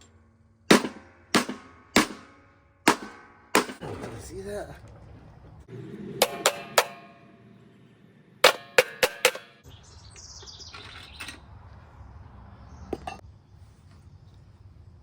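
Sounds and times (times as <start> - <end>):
hammer striking metal casing: 0.0 - 4.0, 6.2 - 7.5, 8.4 - 9.6.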